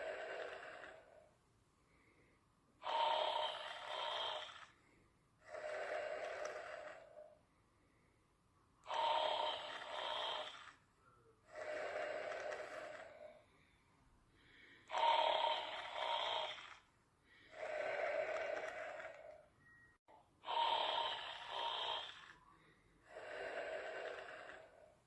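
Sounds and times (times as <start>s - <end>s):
person snoring: 0.0s - 1.3s, 2.8s - 4.8s, 5.4s - 7.4s, 8.9s - 10.8s, 11.5s - 13.4s, 14.4s - 19.4s, 20.4s - 25.0s.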